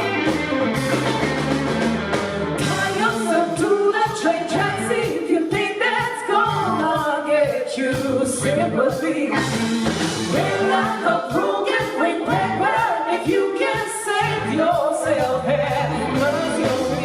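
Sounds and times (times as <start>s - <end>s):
blues-rock band playing: 0.0s - 5.8s, 7.9s - 17.0s
person singing: 10.3s - 17.0s.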